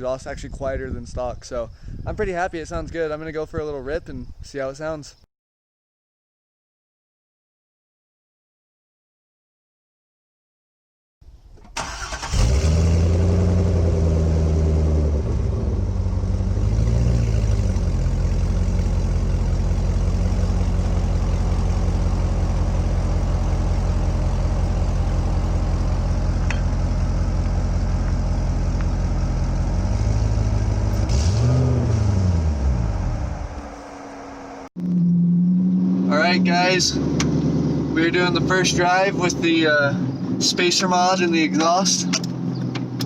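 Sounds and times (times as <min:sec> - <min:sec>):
car engine idling and revving: 0:11.8 - 0:43.0.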